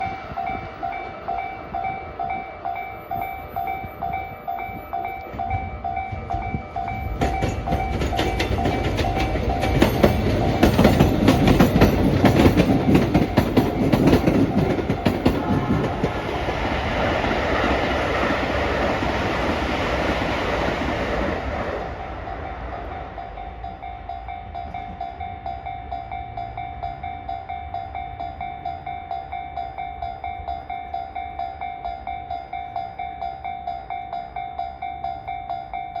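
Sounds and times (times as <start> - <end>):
train wheels clattering: 3.0 - 26.1.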